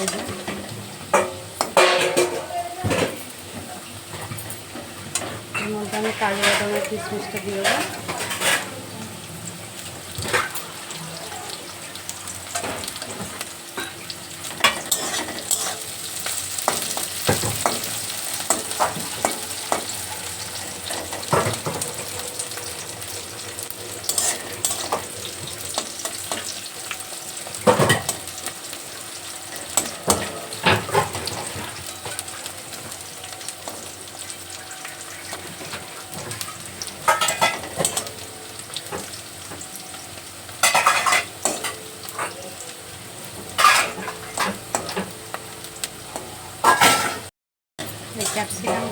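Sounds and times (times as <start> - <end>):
spoon scraping and knocking pan: 0.0 - 3.2, 4.2 - 8.7, 14.5 - 28.5, 29.5 - 34.0, 43.4 - 45.2
nuts sizzling in a pan: 0.0 - 48.9.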